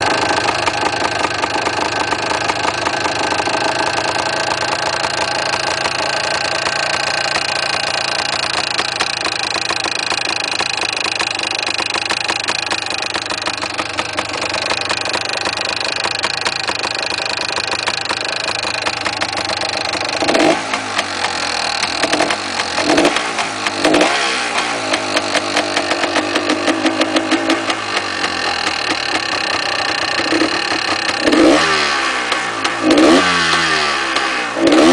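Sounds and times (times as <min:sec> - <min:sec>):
motorcycle engine idling with rattle: 0:00.0 - 0:34.9
engine revving blips: 0:19.2 - 0:34.9.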